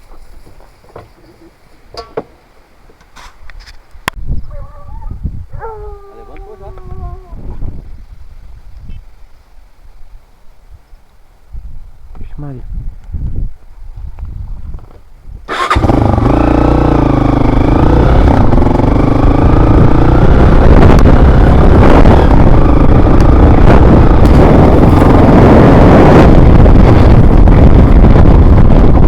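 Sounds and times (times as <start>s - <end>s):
wind rumble on microphone: 3.3s - 29.0s
motorcycle engine running: 15.5s - 29.0s.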